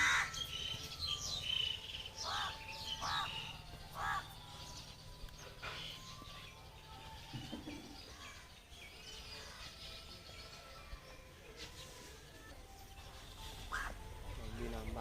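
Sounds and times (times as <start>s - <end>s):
birds chirping: 0.0s - 15.0s.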